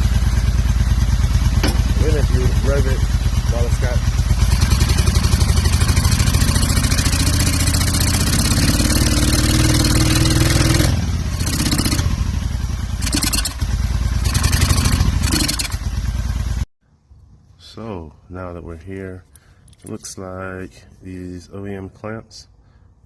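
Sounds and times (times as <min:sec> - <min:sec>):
motorcycle engine revving: 0:00.0 - 0:16.7.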